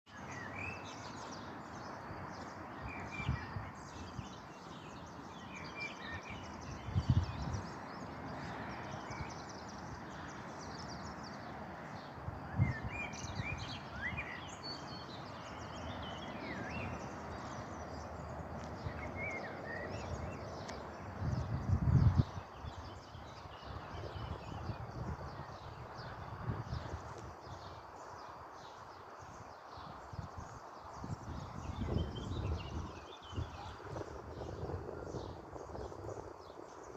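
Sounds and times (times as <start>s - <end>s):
small birds chirping: 0.1s - 36.9s.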